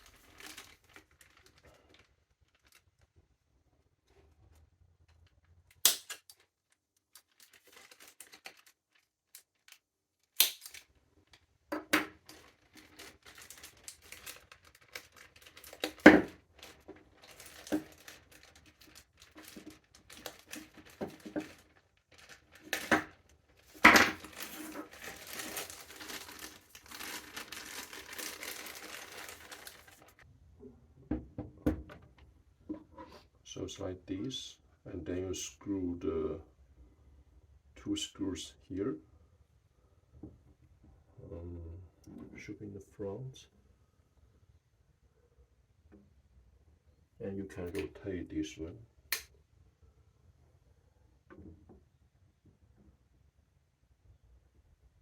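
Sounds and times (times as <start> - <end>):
plastic packaging crinkling and tearing: 0.0 - 3.2, 6.0 - 11.4, 12.2 - 30.2.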